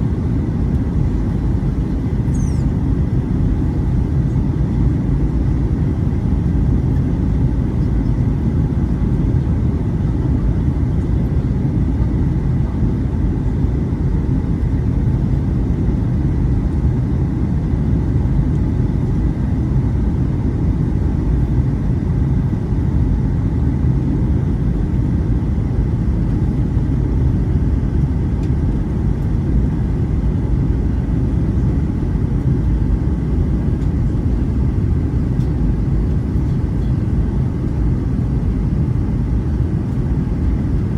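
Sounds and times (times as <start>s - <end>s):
airliner cabin engine rumble: 0.0s - 40.9s.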